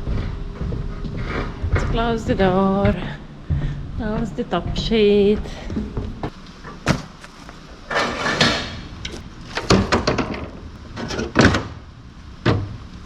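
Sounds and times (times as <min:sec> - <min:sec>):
trailer door scraping: 0:05.8 - 0:11.8.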